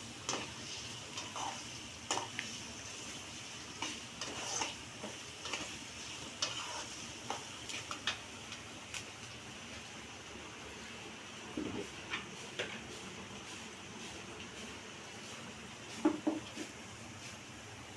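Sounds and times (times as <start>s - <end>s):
onions sizzling in hot oil: 0.0s - 17.9s
spoon scraping a pan: 0.2s - 2.6s, 3.7s - 8.0s.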